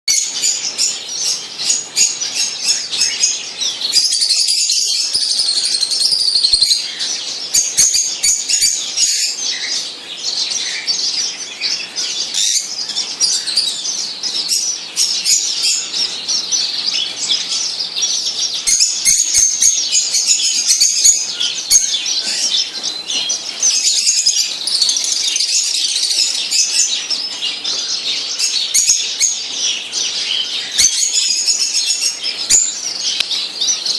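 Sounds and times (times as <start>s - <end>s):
many small birds chirping: 0.0s - 33.9s.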